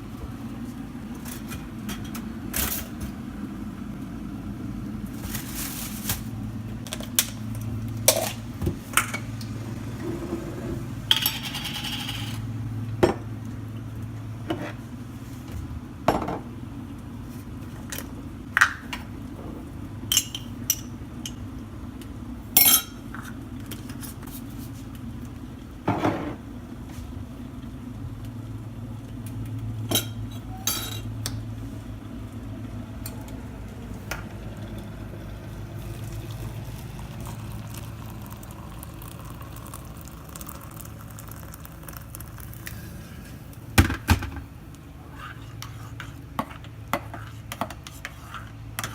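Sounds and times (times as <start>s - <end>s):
electric kettle humming: 6.4s - 15.1s, 25.3s - 45.1s
crockery and cutlery clinking: 22.6s - 23.1s, 29.9s - 31.1s.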